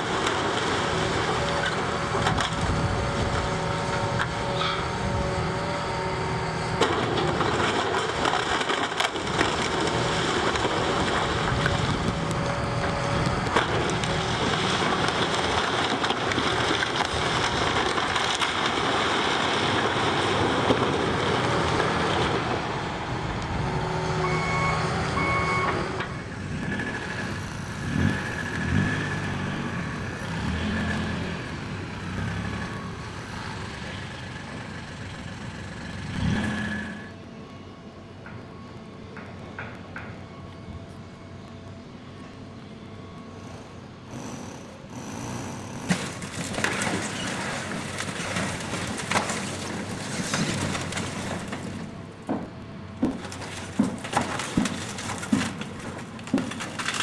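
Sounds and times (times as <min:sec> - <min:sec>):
demolition machinery running: 0:00.0 - 0:57.0
debris crushing and scraping: 0:06.8 - 0:22.7, 0:45.8 - 0:52.0, 0:53.0 - 0:57.0
reversing alarm beeps: 0:24.0 - 0:26.3
sharp cracks and knocks: 0:45.9 - 0:57.0.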